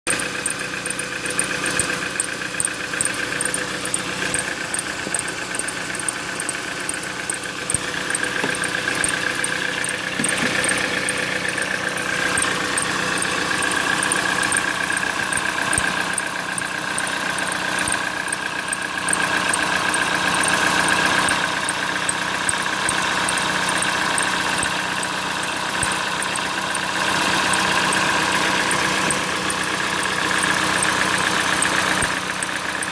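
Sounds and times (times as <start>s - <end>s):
car engine idling: 0.0s - 32.9s
fast faint high ticking: 0.1s - 32.9s.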